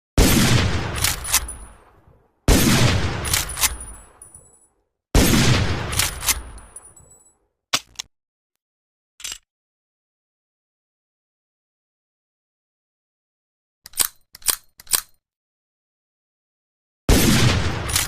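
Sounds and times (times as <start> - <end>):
rifle shots with echo: 0.2 - 1.9, 2.5 - 4.2, 5.2 - 6.8, 17.1 - 18.0
rifle lever action clacks: 1.0 - 1.5, 3.3 - 4.0, 5.9 - 6.4, 13.9 - 15.2.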